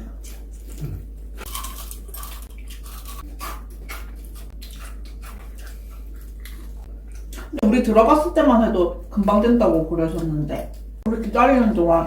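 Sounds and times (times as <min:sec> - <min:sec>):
chewing crunchy fried chicken: 0:00.0 - 0:07.6.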